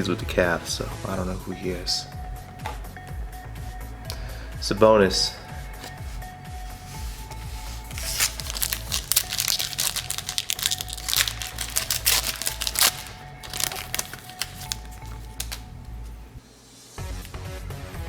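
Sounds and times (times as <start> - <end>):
plastic wrapper crinkling: 7.9 - 16.1.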